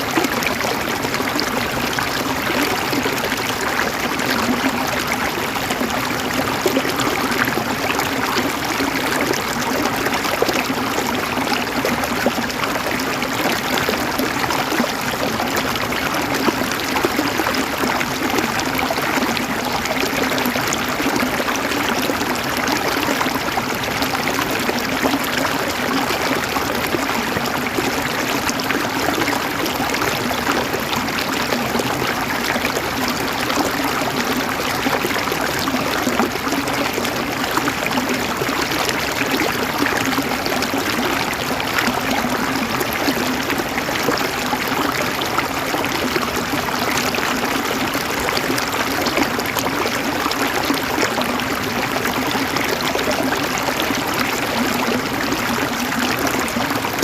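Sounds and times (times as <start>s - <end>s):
river water running and gurgling: 0.0s - 57.0s.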